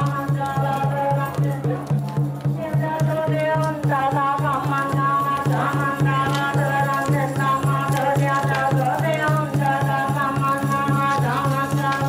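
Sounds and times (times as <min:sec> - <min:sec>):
temple drum beating: 0:00.0 - 0:12.0
voices chanting in unison: 0:02.6 - 0:12.0.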